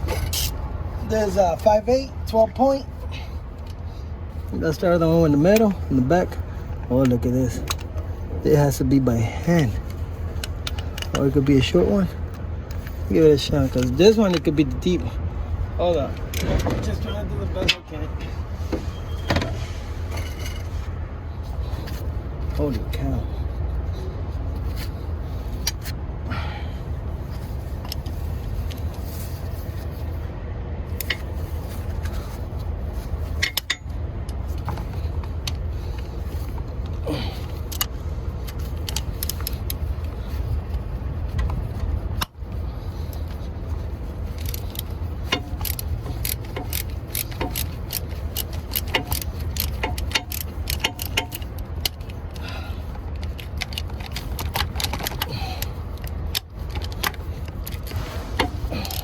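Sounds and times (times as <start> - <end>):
ratchet clicking: 33.3 - 36.7, 37.5 - 40.4, 44.1 - 59.0
hand tools clinking on metal: 44.3 - 59.0.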